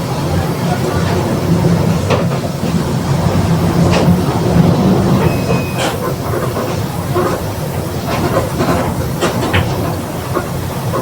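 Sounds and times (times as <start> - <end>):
bus engine drone: 0.0 - 11.0
short high squeak: 5.2 - 6.0.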